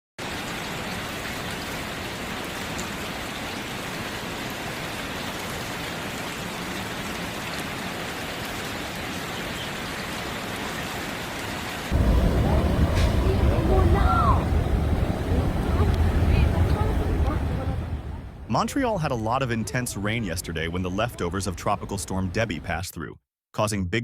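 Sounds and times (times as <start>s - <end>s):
steady rain hiss: 0.2s - 22.6s
raindrop ticks: 12.0s - 17.6s.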